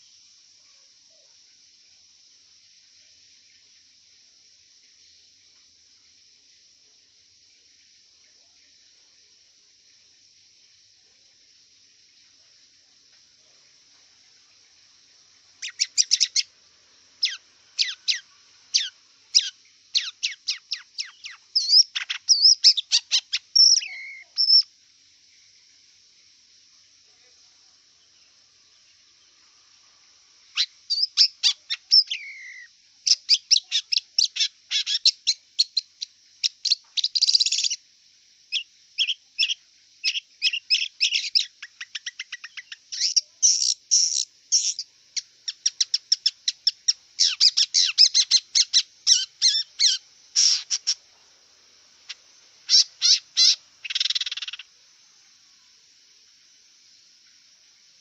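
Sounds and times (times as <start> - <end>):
steady high hiss: 0.0 - 58.0
bird singing chattering phrases: 15.6 - 16.4, 17.2 - 18.2, 18.8 - 24.6, 30.6 - 35.1, 47.2 - 51.0, 52.1 - 54.6.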